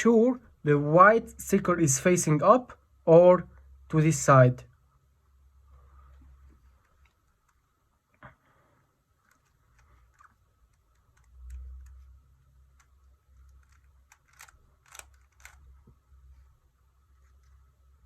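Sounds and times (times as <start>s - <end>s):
plastic puzzle cube clicks: 12.7s - 15.8s.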